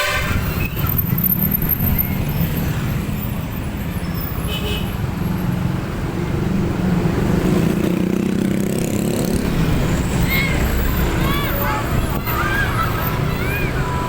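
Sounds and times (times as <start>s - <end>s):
bus engine revving: 6.2s - 14.0s.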